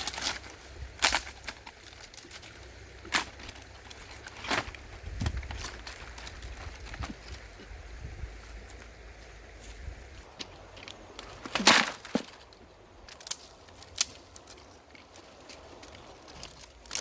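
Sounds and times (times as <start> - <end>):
steady low rumble: 0.0 - 11.2.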